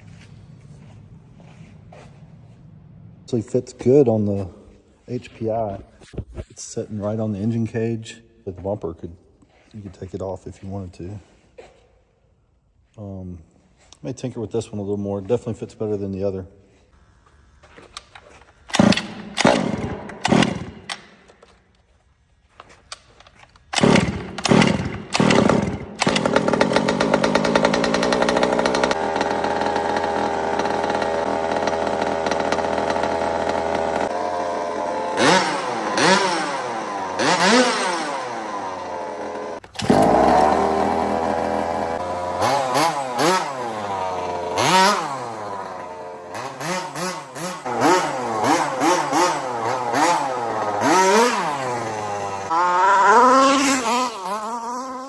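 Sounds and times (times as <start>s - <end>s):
small two-stroke engine revving: 18.7s - 21.2s, 23.7s - 55.0s.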